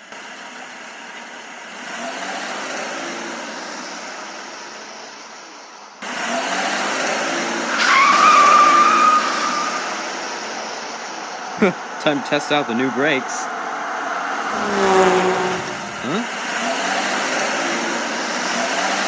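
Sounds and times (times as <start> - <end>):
tyre squeal: 7.7 - 10.0
car engine running: 14.4 - 16.3.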